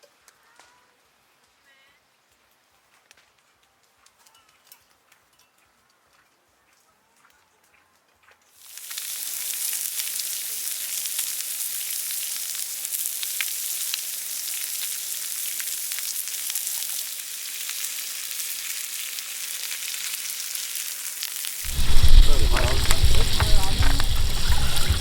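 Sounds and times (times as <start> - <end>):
meat sizzling on a grill: 8.6 - 25.0.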